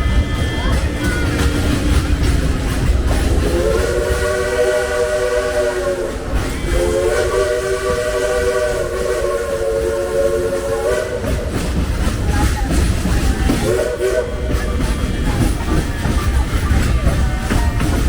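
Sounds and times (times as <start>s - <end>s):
low rumble of moving train: 0.0s - 18.0s
steam locomotive whistle: 3.2s - 11.9s, 12.7s - 18.0s.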